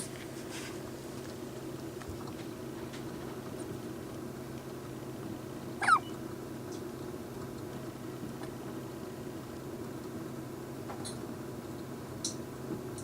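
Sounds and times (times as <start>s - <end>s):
steady low hum: 0.0s - 13.0s
short high-pitched hiccup: 5.8s - 6.2s.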